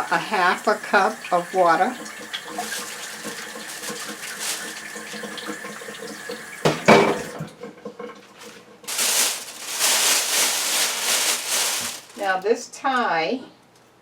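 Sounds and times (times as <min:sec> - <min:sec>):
water pouring into plastic bag: 0:00.0 - 0:06.6, 0:08.2 - 0:12.4
rustling hiss: 0:02.4 - 0:05.5, 0:08.9 - 0:12.5.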